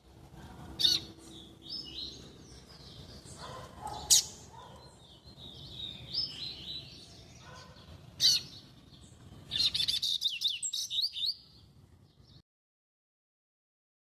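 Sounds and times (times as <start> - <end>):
bird singing: 0.8 - 12.4.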